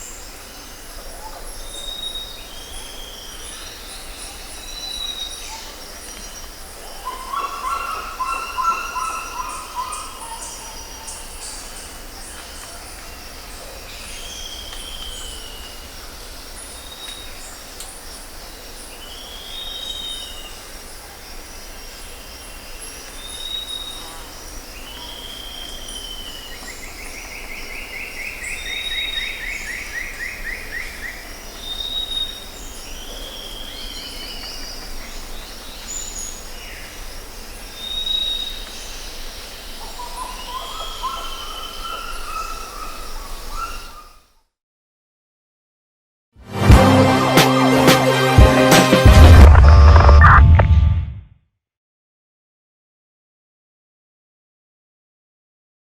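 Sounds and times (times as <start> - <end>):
birds calling with whistled notes: 0.0 - 20.8, 22.0 - 44.3
low rumble: 48.3 - 51.3.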